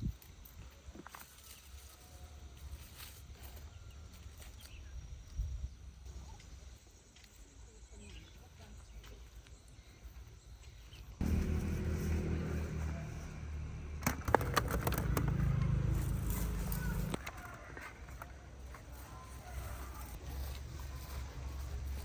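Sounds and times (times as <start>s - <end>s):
vehicle engine humming: 11.2s - 17.4s.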